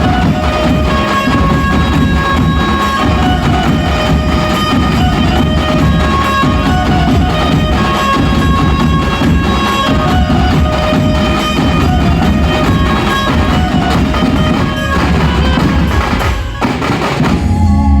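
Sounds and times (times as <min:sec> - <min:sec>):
drums beaten in dense rhythm: 0:00.0 - 0:18.0.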